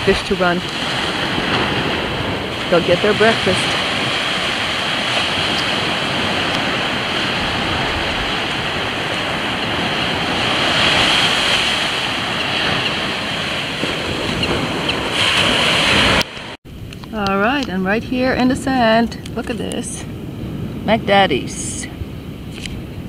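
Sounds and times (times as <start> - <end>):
ocean surf washing on beach: 0.0 - 23.0.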